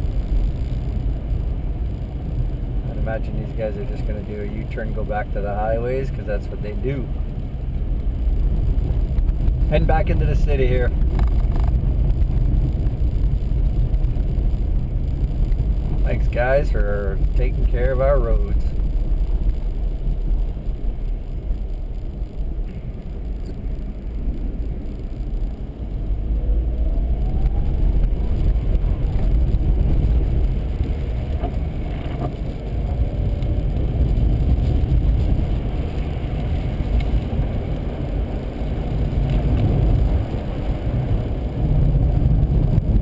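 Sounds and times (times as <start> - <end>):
car engine and tyre rumble: 0.0 - 43.0.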